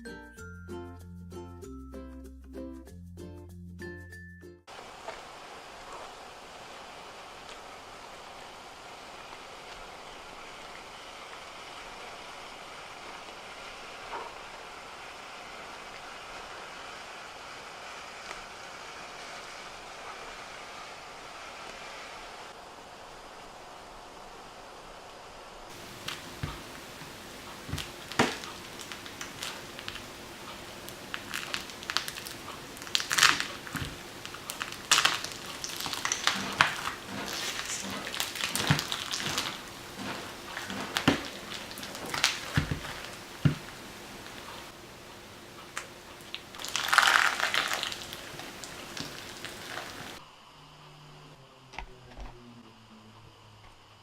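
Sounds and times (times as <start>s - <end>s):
slime crackling and popping: 25.7s - 44.8s, 45.7s - 50.2s.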